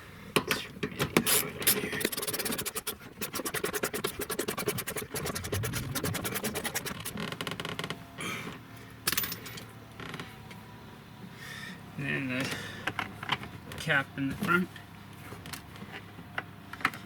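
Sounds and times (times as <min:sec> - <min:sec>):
hand ratchet clicking rapidly: 0:02.0 - 0:07.2.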